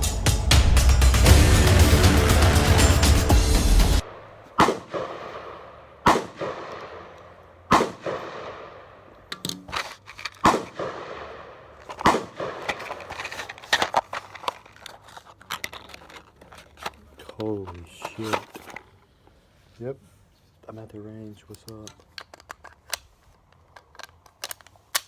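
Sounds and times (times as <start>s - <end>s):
quieter rapid gunshots: 4.0s - 9.1s, 10.4s - 12.8s
loud gunshots with echo: 4.6s - 7.1s, 7.7s - 8.9s.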